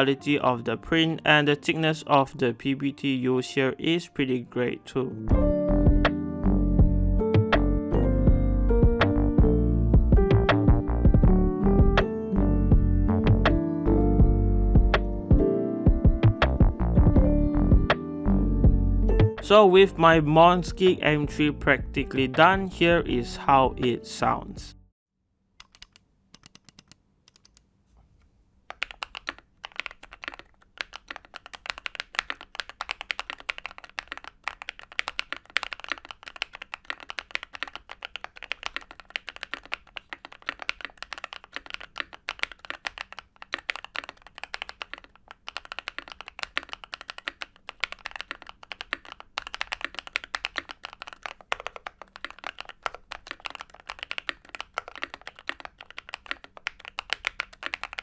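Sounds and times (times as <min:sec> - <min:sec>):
mechanical keyboard typing: 0:25.6 - 0:27.6, 0:28.7 - 0:58.0.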